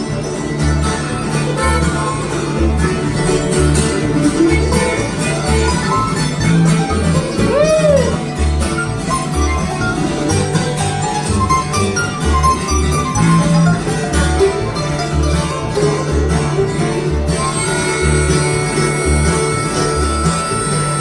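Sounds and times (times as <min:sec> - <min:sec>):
bass notes: 0:00.0 - 0:21.0
picked acoustic guitar: 0:00.0 - 0:21.0
string-band lead: 0:00.0 - 0:21.0.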